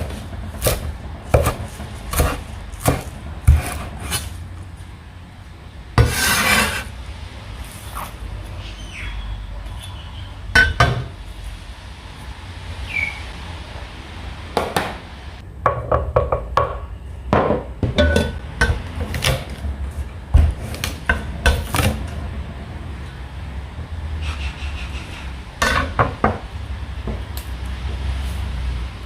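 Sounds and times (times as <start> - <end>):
kitchen utensils and dishes clinking: 17.8 - 19.5.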